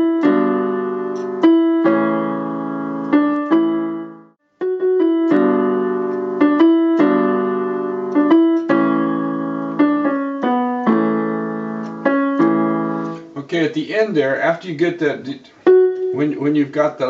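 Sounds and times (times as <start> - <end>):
piano melody over chords: 0.0 - 13.4, 15.5 - 17.0.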